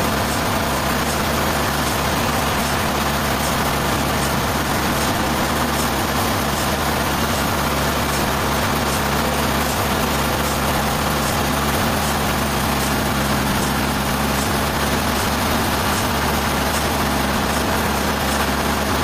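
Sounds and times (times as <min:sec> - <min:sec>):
sawmill engine drone: 0:00.0 - 0:19.0.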